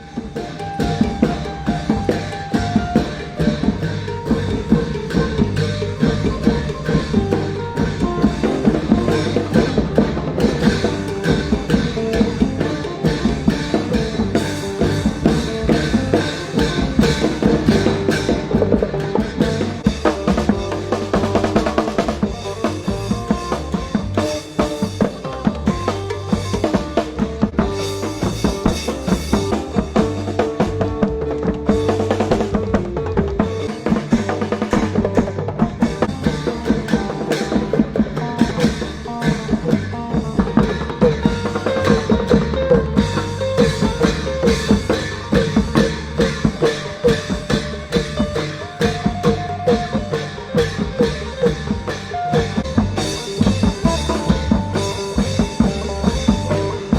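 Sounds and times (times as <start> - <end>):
music with drum beat: 0.0 - 56.9.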